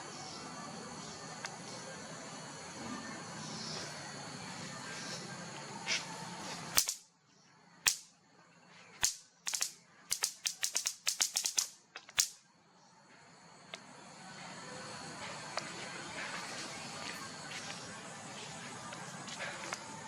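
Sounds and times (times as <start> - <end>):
sharp clicks: 6.8 - 7.1, 7.8 - 8.1, 9.0 - 12.4.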